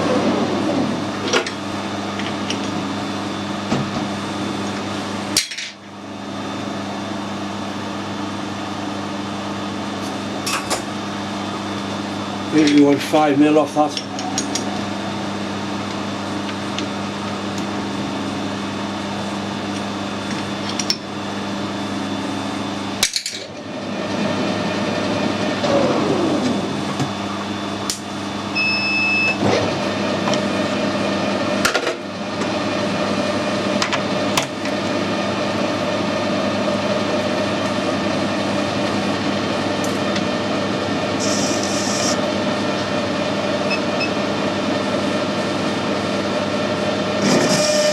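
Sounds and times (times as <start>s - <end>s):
falling machine whine: 0.0s - 5.3s, 21.2s - 47.9s
machine tool humming: 32.2s - 47.9s.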